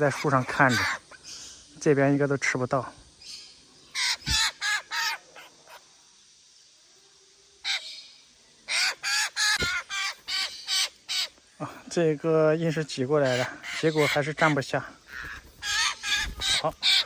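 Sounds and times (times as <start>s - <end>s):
birds giving harsh crow-like calls: 0.0s - 1.5s, 3.8s - 5.8s, 7.6s - 8.0s, 8.6s - 11.6s, 12.7s - 17.0s.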